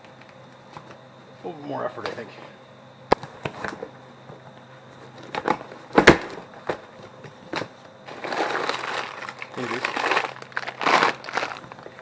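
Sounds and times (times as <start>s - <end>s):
packaging rustling: 8.1s - 12.0s.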